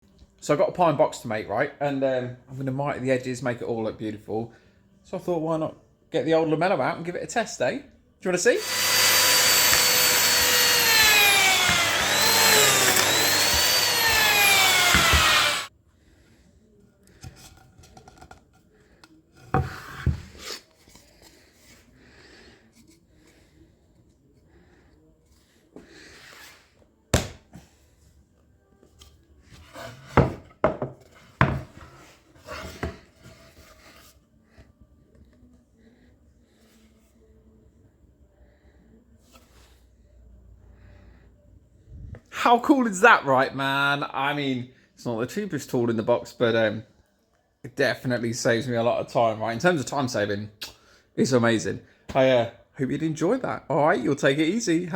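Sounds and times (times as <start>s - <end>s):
joining machine motor whining: 8.6s - 15.7s
wood scraping and rubbing: 8.6s - 15.7s.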